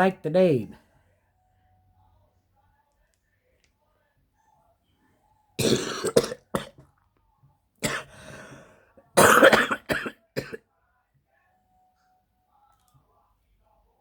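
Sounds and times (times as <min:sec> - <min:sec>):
person coughing: 0:05.6 - 0:06.8, 0:07.8 - 0:08.6, 0:09.2 - 0:10.6.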